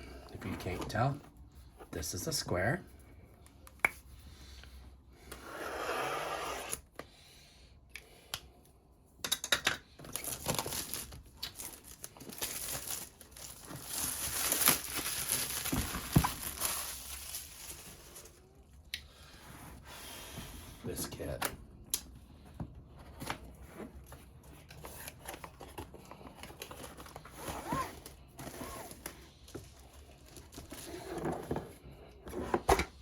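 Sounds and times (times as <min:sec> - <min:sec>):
packaging tearing and crinkling: 0:10.1 - 0:18.4.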